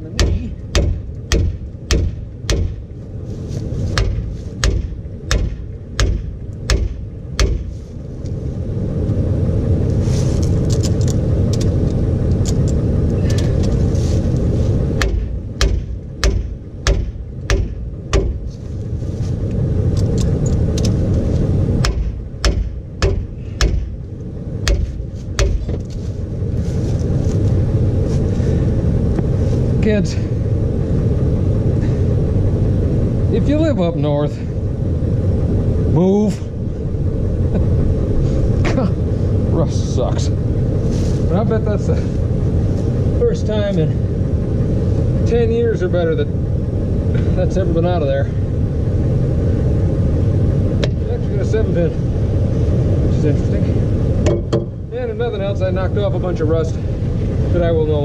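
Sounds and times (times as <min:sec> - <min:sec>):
low rumble: 0:00.0 - 0:58.0
hammer striking metal: 0:00.2 - 0:02.8, 0:04.0 - 0:07.7, 0:15.0 - 0:18.4, 0:21.8 - 0:23.9.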